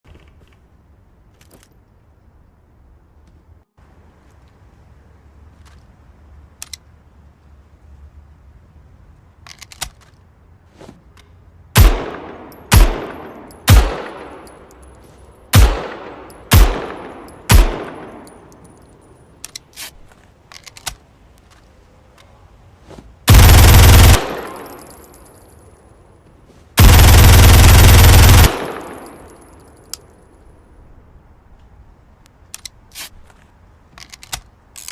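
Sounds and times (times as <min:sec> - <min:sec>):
submachine gun shots: 0:15.6 - 0:18.1, 0:23.3 - 0:24.8, 0:26.8 - 0:29.3
full-auto gun bursts: 0:23.3 - 0:24.8, 0:26.8 - 0:29.0.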